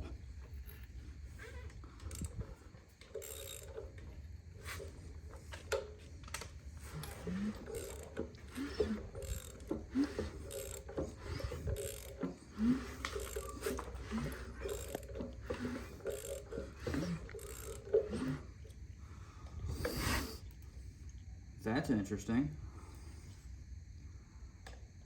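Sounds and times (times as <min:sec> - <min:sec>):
metal parts ticking and squeaking: 0:00.4 - 0:04.2, 0:06.9 - 0:18.4
ratchet clicking: 0:01.5 - 0:04.2, 0:05.5 - 0:18.5.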